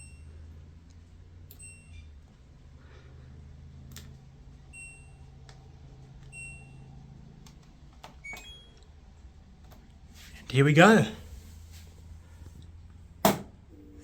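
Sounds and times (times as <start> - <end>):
washing machine low hum: 0.0 - 14.0
short electronic beeps: 1.6 - 2.2, 6.3 - 6.9.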